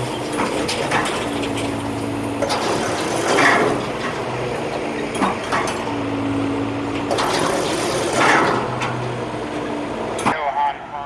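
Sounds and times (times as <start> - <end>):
machinery low hum: 0.0 - 10.3.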